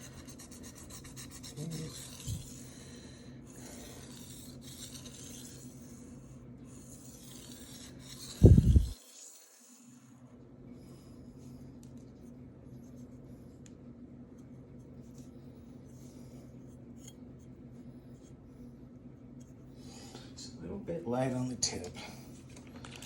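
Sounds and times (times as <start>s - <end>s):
knife grinding on whetstone: 0.0s - 2.7s, 3.6s - 6.0s, 6.8s - 10.0s.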